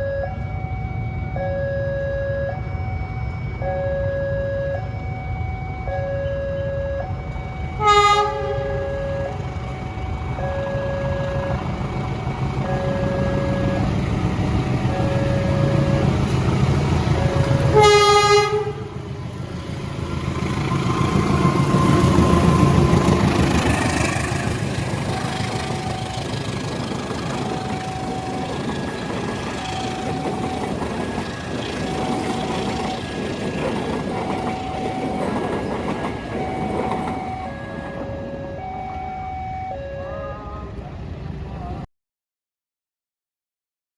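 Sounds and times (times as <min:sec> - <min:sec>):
two-tone alarm beeping: 0:00.0 - 0:18.6, 0:21.1 - 0:40.6
train rumbling past: 0:00.0 - 0:41.9
locomotive horn blast: 0:07.8 - 0:09.6, 0:10.4 - 0:11.8, 0:12.6 - 0:14.1, 0:14.9 - 0:19.0, 0:36.4 - 0:41.1.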